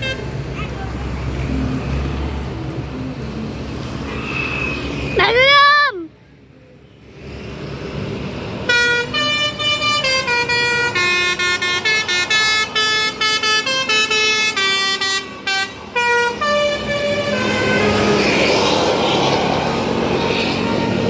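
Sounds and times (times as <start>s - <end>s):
bus horn playing melody: 0.0s - 0.3s, 8.6s - 18.4s, 20.4s - 21.0s.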